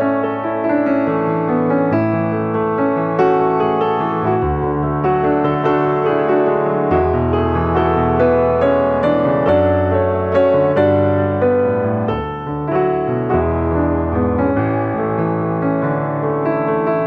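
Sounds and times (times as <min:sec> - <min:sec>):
gentle piano melody: 0:00.0 - 0:17.0.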